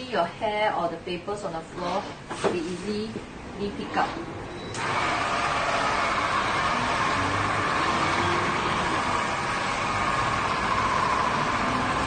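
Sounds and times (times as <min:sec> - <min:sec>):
electric floor sweeper running: 0:04.8 - 0:12.0.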